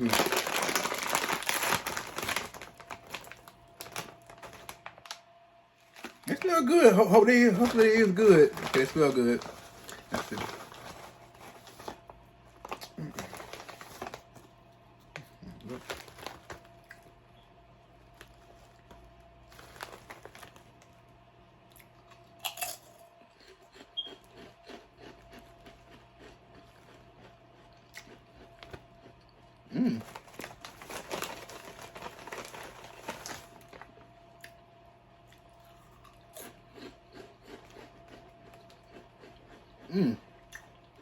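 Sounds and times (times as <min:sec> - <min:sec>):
potato chips crunching: 0:00.0 - 0:05.2, 0:05.8 - 0:17.2, 0:18.0 - 0:21.0, 0:21.6 - 0:34.6, 0:35.2 - 0:41.0
chip bag crinkling: 0:00.0 - 0:17.1, 0:18.0 - 0:21.2, 0:29.9 - 0:34.4
faint steady hum: 0:00.0 - 0:41.0.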